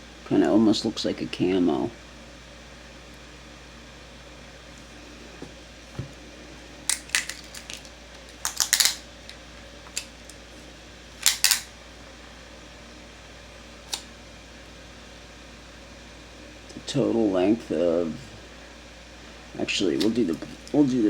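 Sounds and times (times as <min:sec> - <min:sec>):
folding knife clicking: 0:08.4 - 0:09.0, 0:11.2 - 0:11.7.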